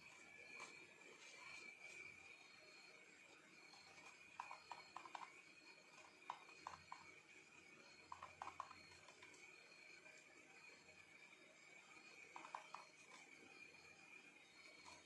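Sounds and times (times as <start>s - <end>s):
faint high-pitched whine: 0.0s - 15.0s.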